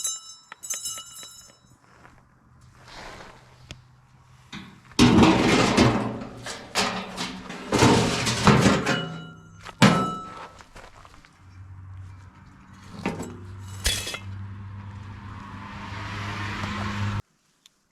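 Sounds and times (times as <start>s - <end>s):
irregular knocks and clatter: 4.5s - 10.6s.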